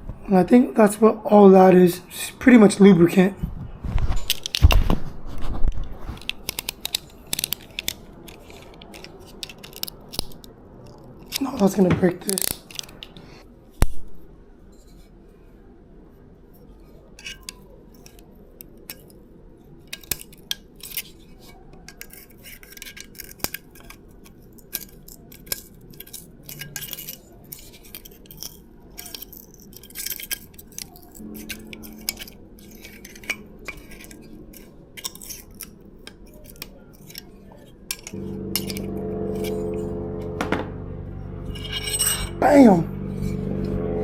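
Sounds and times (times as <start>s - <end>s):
small metallic clicks and clinks: 6.2s - 11.6s, 19.9s - 39.5s.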